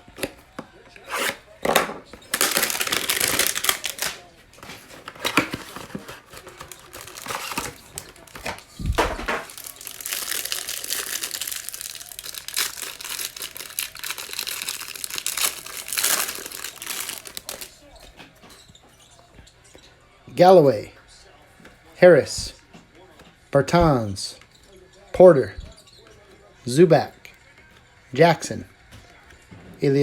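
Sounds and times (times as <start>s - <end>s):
plastic wrapping tearing and crinkling: 1.1s - 17.8s.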